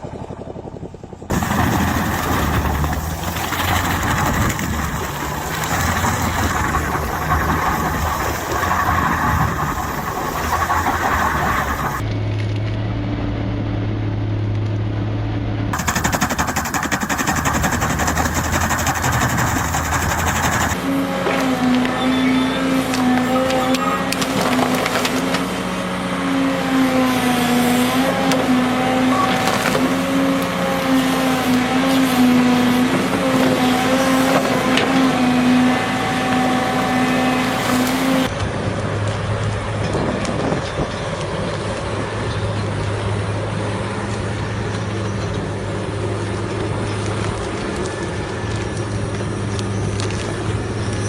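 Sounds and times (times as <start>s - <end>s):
engine running at lower pitch: 0.0s - 51.0s
wood cracking: 1.3s - 12.8s, 15.8s - 22.0s, 22.6s - 25.7s
stump grinder engine under load: 1.3s - 13.1s, 15.8s - 51.0s.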